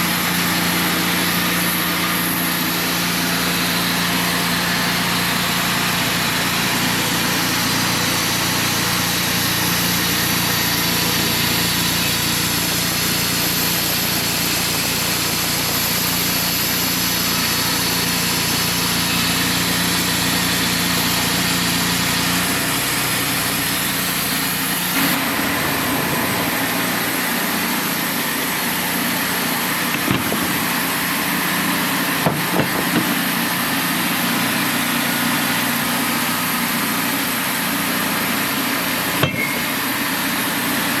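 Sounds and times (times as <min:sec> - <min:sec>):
sawmill engine running: 0:00.0 - 0:41.0
sharp knocks: 0:29.9 - 0:30.7, 0:32.2 - 0:33.2, 0:39.2 - 0:39.7.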